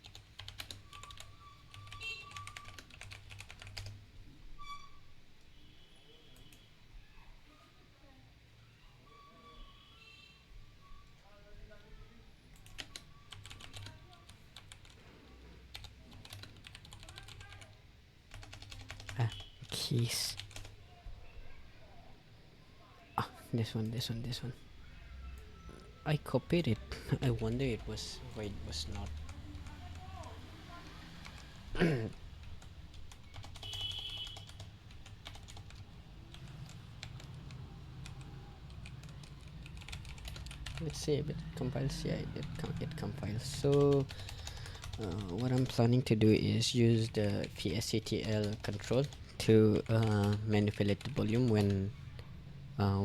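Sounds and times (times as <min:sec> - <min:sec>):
computer keyboard typing: 0:00.0 - 0:04.0, 0:12.5 - 0:15.0, 0:15.7 - 0:20.8, 0:26.6 - 0:46.0, 0:46.9 - 0:51.9.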